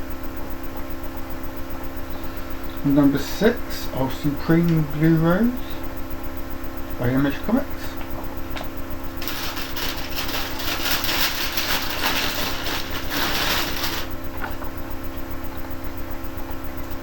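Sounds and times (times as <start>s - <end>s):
electrical hum: 1.4s - 17.0s
packaging crinkling: 9.2s - 14.2s.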